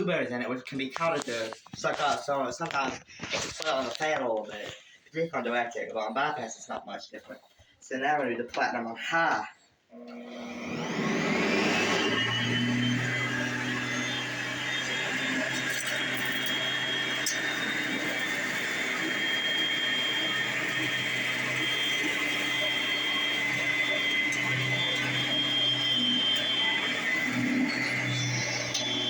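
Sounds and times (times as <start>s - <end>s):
upright vacuum cleaner running: 10.0s - 29.0s.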